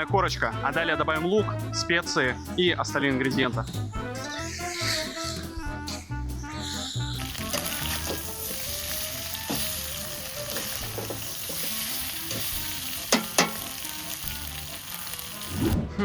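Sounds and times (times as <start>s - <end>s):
meat sizzling in hot oil: 6.7s - 15.8s
utensil knocking against pot: 13.1s - 13.7s.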